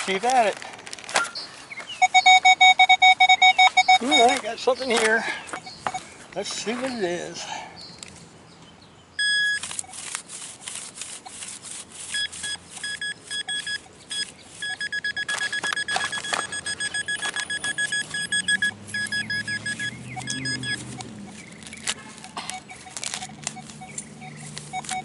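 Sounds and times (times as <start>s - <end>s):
metal detector beeping: 1.2s - 6.1s, 9.2s - 10.1s, 12.0s - 25.0s
digging scraping and crunching: 9.4s - 25.0s.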